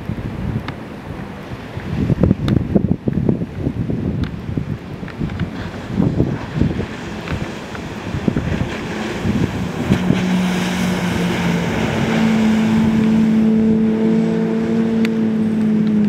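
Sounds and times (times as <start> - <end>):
motorboat engine running: 0.0 - 16.0
wind buffeting microphone: 0.0 - 16.0.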